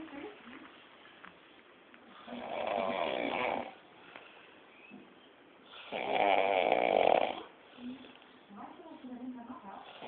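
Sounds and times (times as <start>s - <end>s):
quiet breathing: 0.6s - 5.0s, 5.6s - 10.0s
man snoring heavily: 2.3s - 3.8s, 5.8s - 7.5s.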